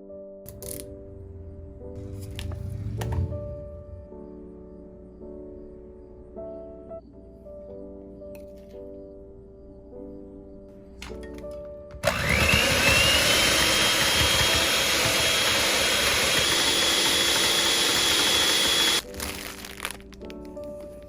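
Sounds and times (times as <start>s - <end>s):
soft background music: 0.0s - 21.0s
blender motor whine: 12.0s - 19.0s.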